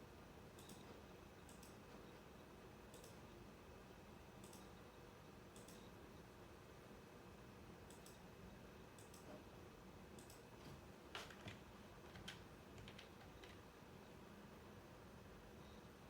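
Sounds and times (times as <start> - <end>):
faint sharp clicks: 2.9 - 3.2, 4.4 - 4.7, 5.6 - 5.9, 7.9 - 8.2, 10.2 - 10.4.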